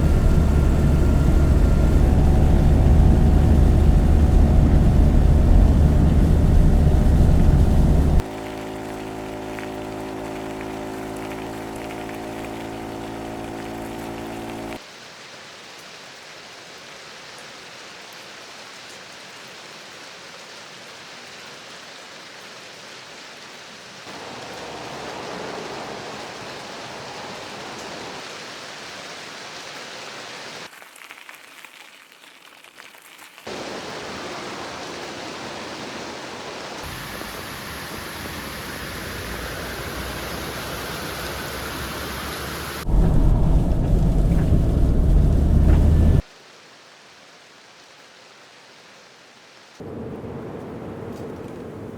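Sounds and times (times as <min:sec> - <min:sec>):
vehicle engine hum: 0:00.0 - 0:14.8, 0:36.8 - 0:46.3
heavy rain hissing: 0:00.0 - 0:15.7, 0:23.6 - 0:30.7, 0:33.5 - 0:50.6.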